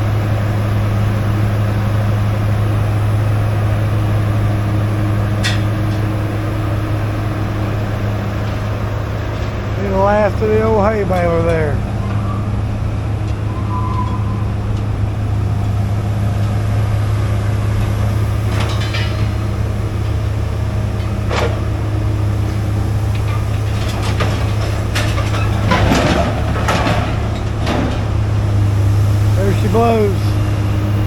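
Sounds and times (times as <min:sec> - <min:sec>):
heavy engine droning: 0:00.0 - 0:31.0
metal clanks and knocks: 0:05.4 - 0:06.2, 0:17.8 - 0:19.6, 0:20.9 - 0:21.7, 0:23.1 - 0:28.3.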